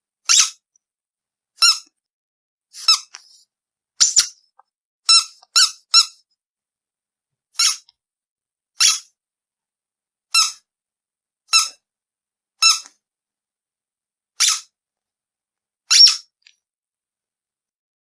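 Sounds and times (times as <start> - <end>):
rubber duck squeaking: 0.3 - 0.6, 1.6 - 1.9, 2.8 - 3.4, 4.0 - 4.4, 5.1 - 6.2, 7.6 - 7.9, 8.8 - 9.1, 11.5 - 11.8, 12.6 - 12.9, 14.4 - 14.7, 15.9 - 16.4.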